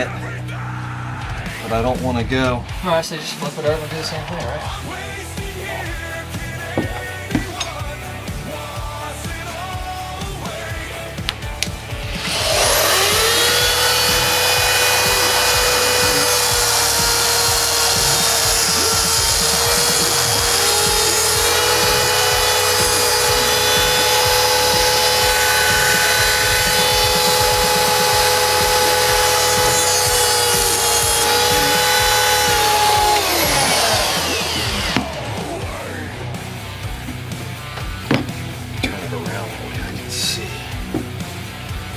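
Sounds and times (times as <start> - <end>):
rotary tool cutting metal: 12.1 - 35.9.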